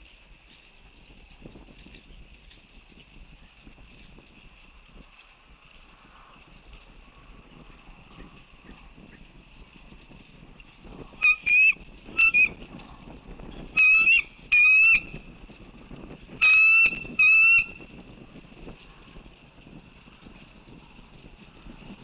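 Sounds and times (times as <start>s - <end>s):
eagle chattering calls: 11.2s - 12.5s, 13.8s - 15.0s.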